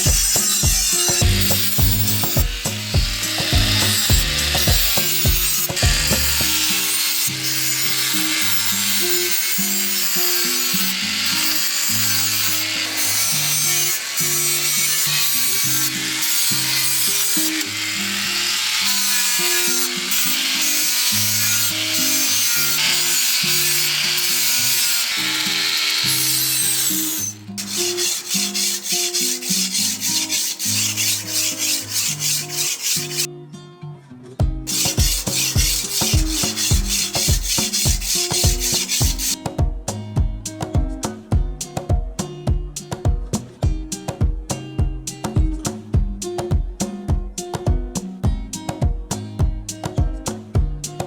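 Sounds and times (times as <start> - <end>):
background music with bass line: 0.0 - 6.7, 34.4 - 51.0
knife blade being filed: 0.0 - 33.3, 34.7 - 39.4.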